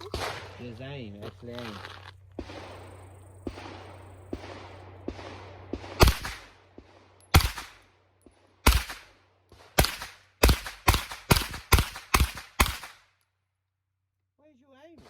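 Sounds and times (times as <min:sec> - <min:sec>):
gunshots with ringing tail: 0:00.0 - 0:00.8, 0:02.4 - 0:13.0.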